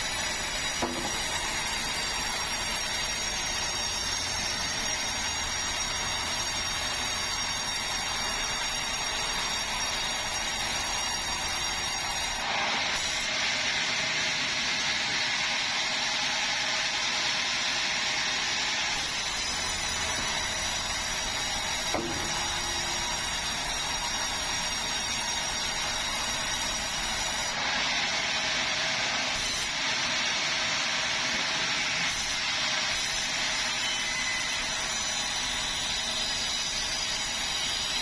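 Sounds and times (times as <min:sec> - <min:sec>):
sawmill saw whining: 0:00.0 - 0:38.0.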